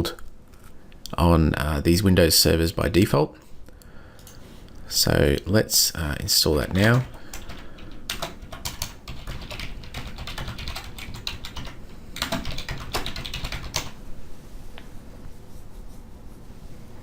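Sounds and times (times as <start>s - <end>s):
computer keyboard typing: 6.7s - 14.0s.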